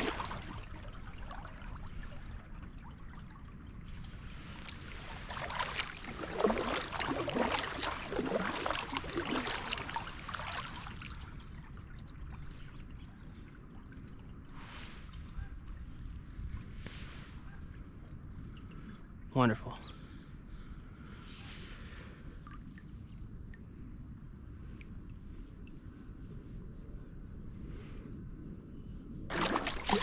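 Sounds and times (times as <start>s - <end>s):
small splashes: 0.0s - 15.5s, 29.3s - 30.0s
water trickling and dripping: 0.0s - 16.4s, 22.4s - 25.9s.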